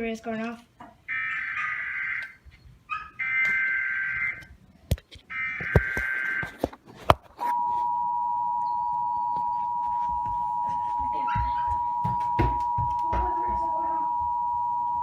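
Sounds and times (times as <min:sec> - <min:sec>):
data tones: 0:07.4 - 0:15.0
two-tone attention signal: 0:07.5 - 0:15.0.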